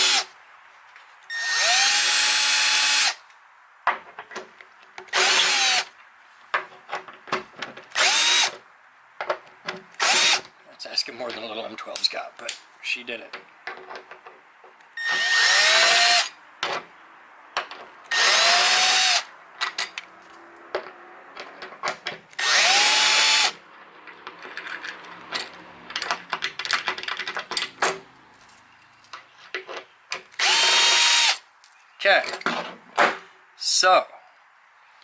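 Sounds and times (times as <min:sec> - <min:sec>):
cordless drill motor whine: 0:01.3 - 0:03.2, 0:15.0 - 0:16.3, 0:22.4 - 0:23.6, 0:30.4 - 0:31.4
handling clicks and knocks: 0:06.5 - 0:07.9, 0:09.2 - 0:10.0, 0:13.2 - 0:14.9, 0:17.5 - 0:18.0, 0:19.6 - 0:22.4, 0:24.0 - 0:30.4.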